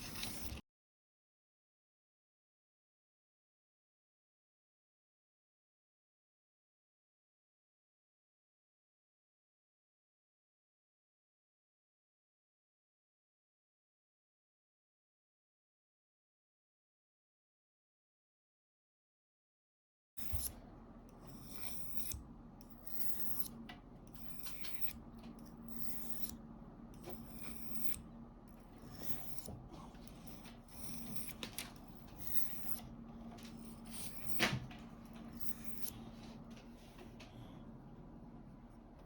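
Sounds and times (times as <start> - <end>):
knife scraping on whetstone: 0.0 - 0.6, 20.2 - 37.6.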